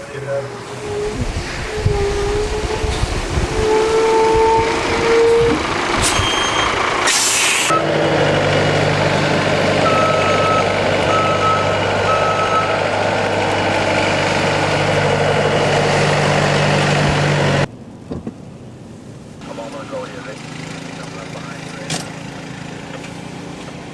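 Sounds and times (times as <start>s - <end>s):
diesel engine running: 0.0s - 17.7s, 19.4s - 23.9s
air brake hiss: 7.0s - 7.7s
reversing alarm beeps: 9.8s - 12.8s.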